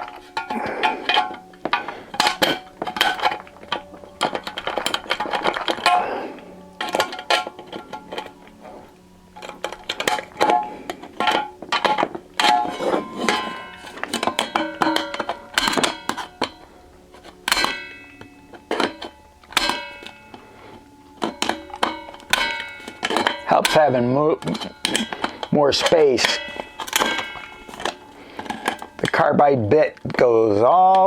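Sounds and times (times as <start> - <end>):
nibbler snapping through sheet metal: 0.0 - 6.2, 9.4 - 16.6, 17.2 - 20.5, 21.2 - 29.1.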